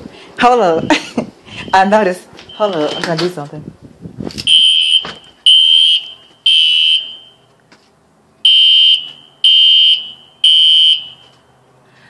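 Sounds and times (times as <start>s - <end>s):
fire alarm high-pitched beeps: 2.5s - 3.2s, 4.5s - 7.4s, 8.4s - 11.3s.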